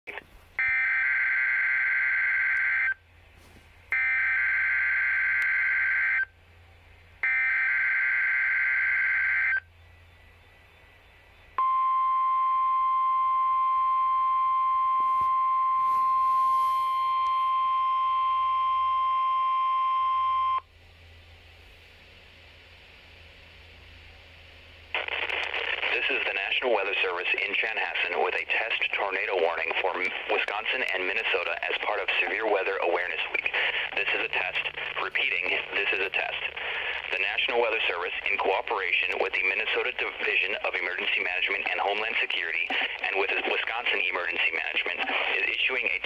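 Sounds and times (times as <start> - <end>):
steady weather alert tone: 25.0 - 46.0.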